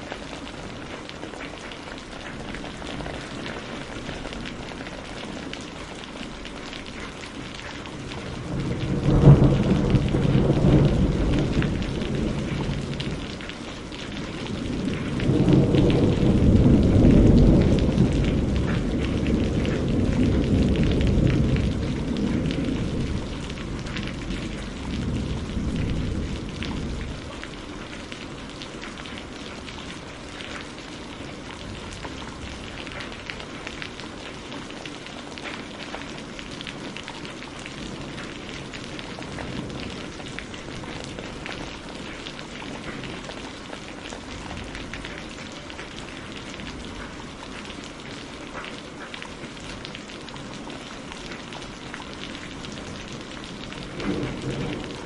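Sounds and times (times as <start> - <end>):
steady rain: 0.0 - 55.0
thunder rumble: 7.9 - 33.6, 52.4 - 55.0.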